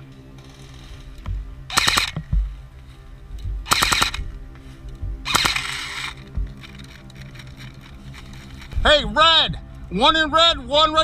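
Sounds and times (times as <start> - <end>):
background music: 0.0 - 11.0
airsoft gun firing bursts: 1.7 - 2.3, 3.6 - 4.2, 5.2 - 6.7.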